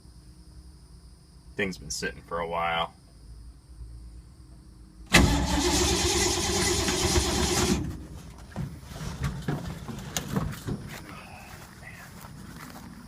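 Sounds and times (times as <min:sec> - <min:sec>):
starter motor cranking engine: 0:05.1 - 0:08.0.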